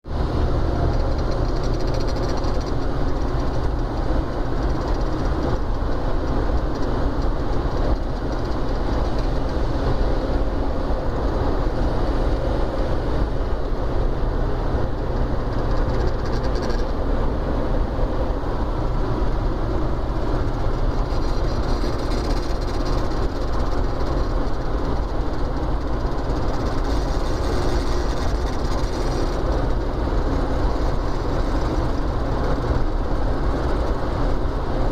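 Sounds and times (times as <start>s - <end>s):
car engine running: 0.1s - 34.9s
gearbox mechanical noise: 0.6s - 10.2s, 15.0s - 17.0s, 20.3s - 34.9s.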